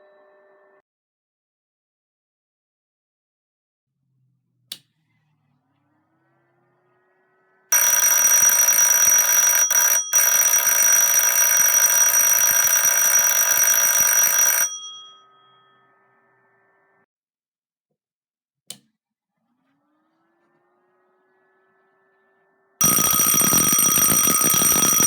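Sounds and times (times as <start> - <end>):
click: 4.7 - 4.9, 18.7 - 18.9
electric alarm bell ringing: 7.7 - 16.1, 22.8 - 25.0.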